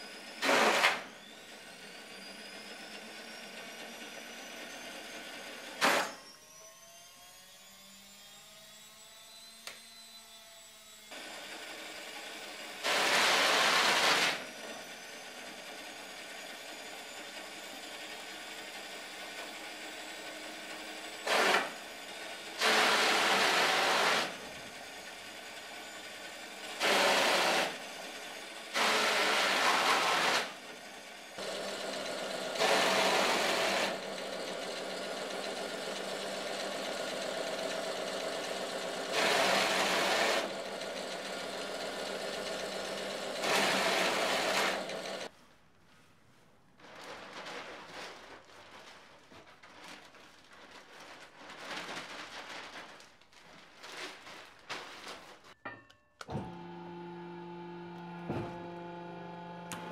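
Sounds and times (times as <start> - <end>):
cardboard tearing in shredder: 0.1 - 2.7, 5.7 - 8.8, 11.1 - 15.6, 20.2 - 45.3, 56.5 - 59.9
shredder motor hum: 10.9 - 15.8, 20.2 - 45.3, 56.2 - 59.9.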